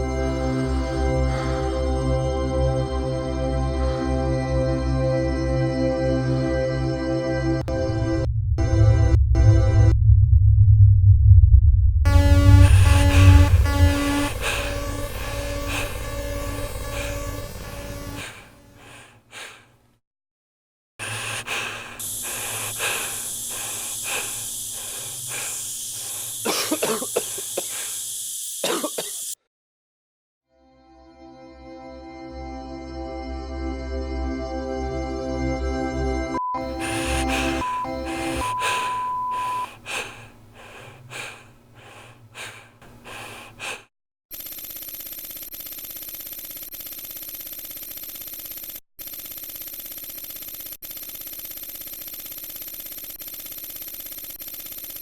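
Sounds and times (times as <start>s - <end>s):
person panting: 0.0s - 2.2s, 12.5s - 19.8s, 21.0s - 26.5s, 27.1s - 28.1s, 36.6s - 43.9s
person breathing hard: 0.0s - 2.3s, 3.6s - 4.5s, 12.5s - 19.8s, 21.0s - 28.1s, 36.6s - 43.9s
steady electronic beep: 12.1s - 18.2s, 36.4s - 39.7s
electronic buzz with high whine: 12.1s - 18.6s
steady hiss: 22.0s - 29.4s
person coughing: 26.4s - 27.9s, 28.6s - 29.3s.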